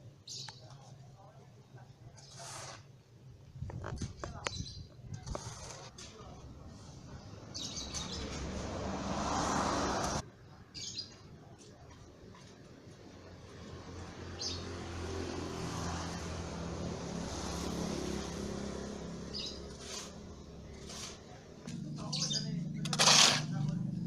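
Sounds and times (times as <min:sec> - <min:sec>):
birds chirping: 0:00.2 - 0:00.9, 0:07.1 - 0:08.4, 0:10.4 - 0:11.6, 0:19.2 - 0:20.0, 0:21.6 - 0:23.0
motor vehicle passing by: 0:06.8 - 0:10.2, 0:13.0 - 0:24.0.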